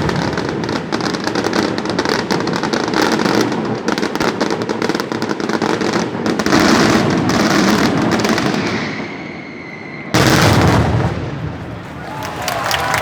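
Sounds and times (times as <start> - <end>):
fireworks bangs and crackling: 0.0 - 13.0
steady high whistle: 8.6 - 10.2.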